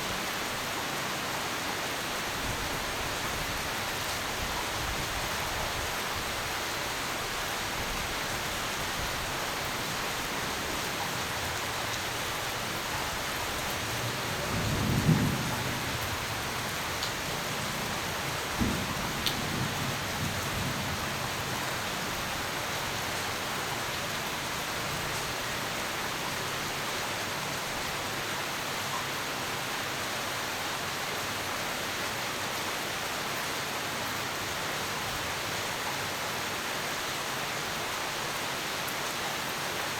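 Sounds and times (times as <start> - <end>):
steady rain hissing: 0.0 - 39.9
thunder rumbling: 13.9 - 21.6.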